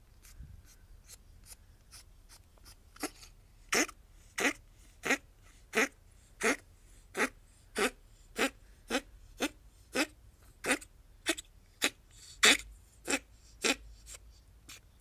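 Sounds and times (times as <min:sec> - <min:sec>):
ferret coughing: 0:03.0 - 0:13.8.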